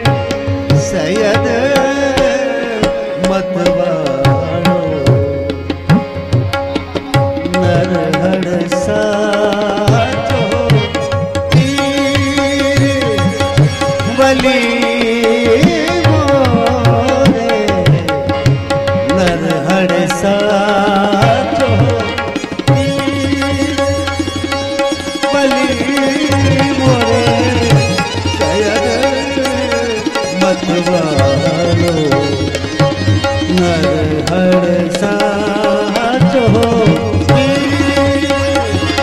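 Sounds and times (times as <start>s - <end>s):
qawwali music: 0.0s - 39.0s
tabla and drum beat: 0.0s - 39.0s.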